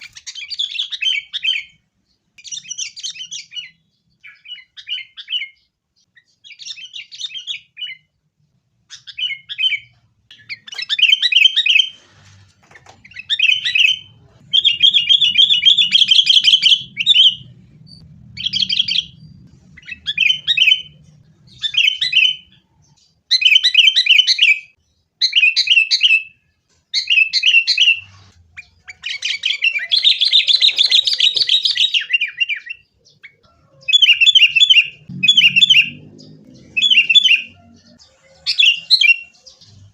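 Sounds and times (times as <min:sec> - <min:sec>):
bulbul chattering song: 0:13.0 - 0:26.0, 0:27.1 - 0:39.9.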